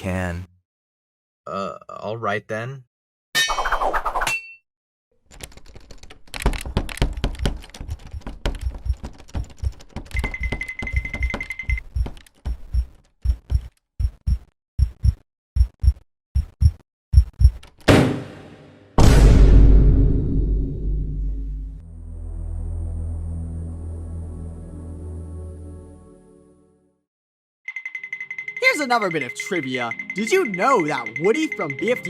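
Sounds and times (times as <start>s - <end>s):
door thuds and knocks: 6.3s - 12.6s
high beep: 10.2s - 11.8s
loud crash: 17.9s - 21.8s.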